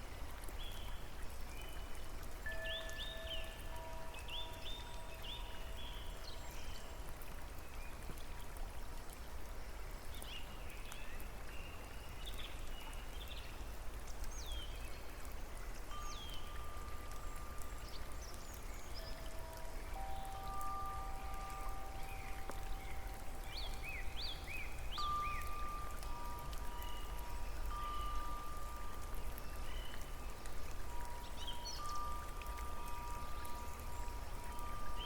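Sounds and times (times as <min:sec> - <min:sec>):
rain patter: 0:00.0 - 0:35.0
birds chirping: 0:15.9 - 0:35.0
faint long held tones: 0:18.9 - 0:30.2.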